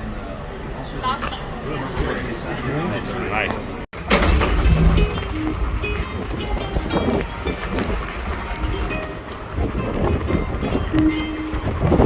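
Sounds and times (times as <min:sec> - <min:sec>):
moving vehicle rumble: 0:03.7 - 0:12.0
music playing: 0:04.6 - 0:12.0.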